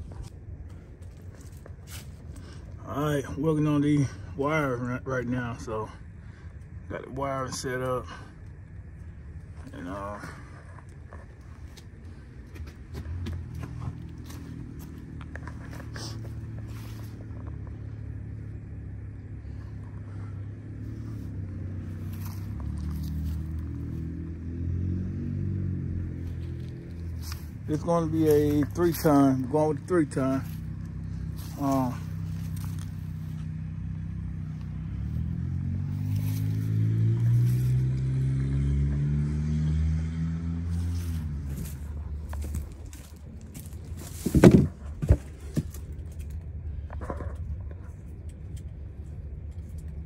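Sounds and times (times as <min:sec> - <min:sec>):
low engine hum: 0:00.0 - 0:50.0.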